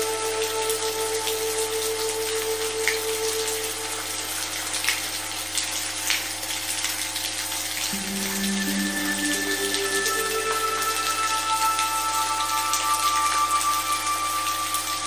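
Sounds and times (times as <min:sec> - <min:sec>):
steady rain: 0:00.0 - 0:15.0
synthesized drone: 0:07.9 - 0:15.0.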